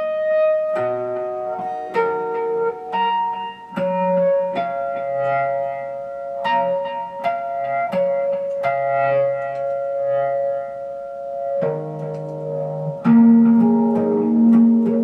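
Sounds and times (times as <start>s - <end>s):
ambient guitar with delay: 0.0s - 15.0s.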